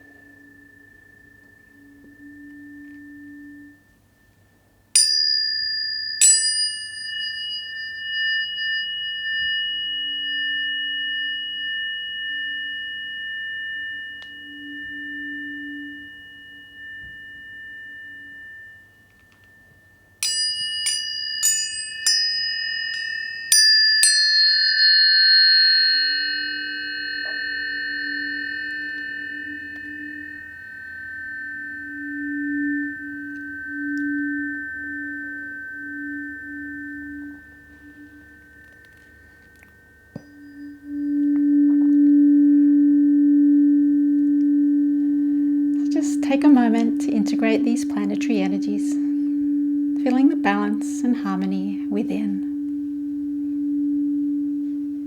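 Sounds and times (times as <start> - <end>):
tuning forks struck and ringing: 0.0 - 55.0
faint low tone: 26.9 - 55.0.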